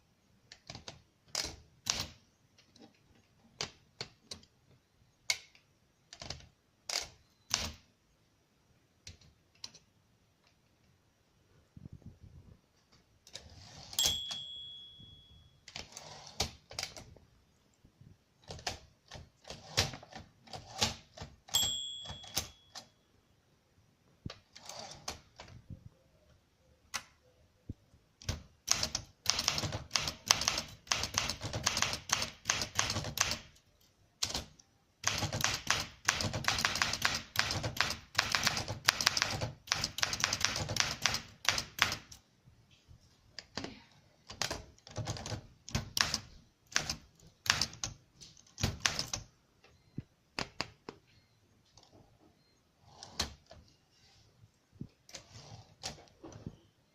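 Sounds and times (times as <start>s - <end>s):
manual typewriter typing: 0.5s - 4.5s, 6.1s - 7.9s, 18.4s - 22.9s, 28.2s - 42.2s, 44.2s - 49.3s.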